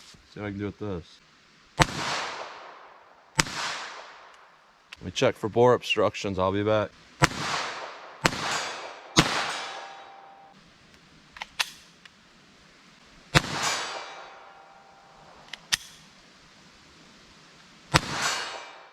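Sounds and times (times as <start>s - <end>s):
handgun shots echoing: 7.2s - 10.3s, 13.4s - 14.7s.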